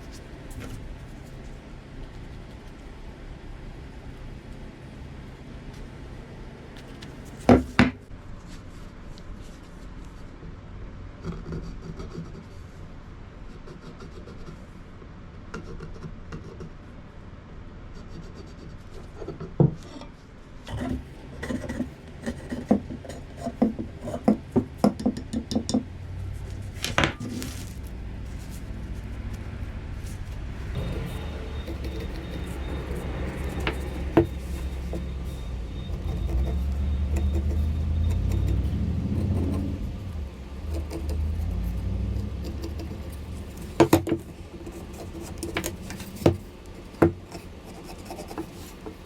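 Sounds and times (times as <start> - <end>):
tool scraping wood: 20.7 - 25.4, 30.0 - 49.0
tools knocking on wooden handle: 23.6 - 25.9.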